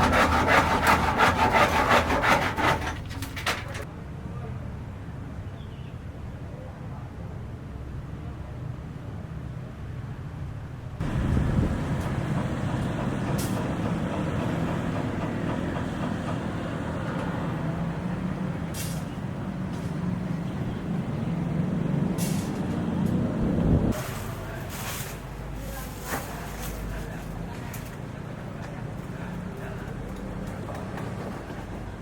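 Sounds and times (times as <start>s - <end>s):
heavy engine humming: 11.0s - 27.7s.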